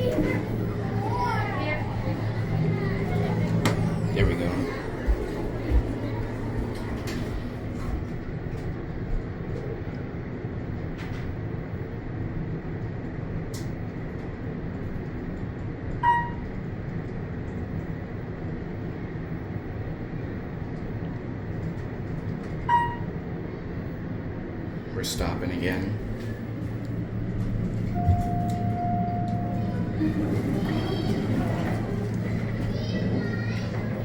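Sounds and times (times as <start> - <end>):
elevator car rumbling: 0.0 - 34.0
short electronic beep: 16.0 - 16.5, 22.7 - 23.1.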